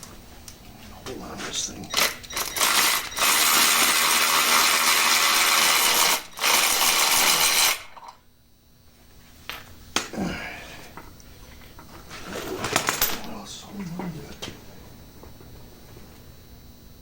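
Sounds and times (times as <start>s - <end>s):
handheld power tool running: 2.0s - 8.1s.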